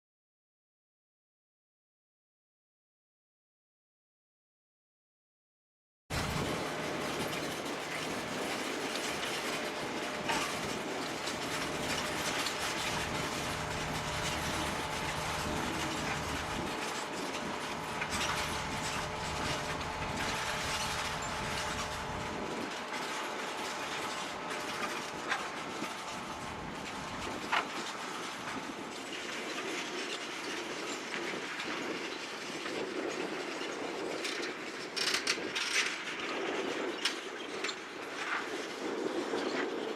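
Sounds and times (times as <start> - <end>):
tractor engine hum: 6.1 - 29.9
mechanical rattle: 6.2 - 29.0.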